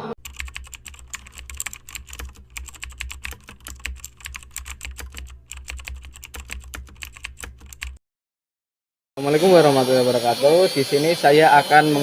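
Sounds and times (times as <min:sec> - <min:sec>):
rapid light clicking and tapping: 0:00.2 - 0:08.0.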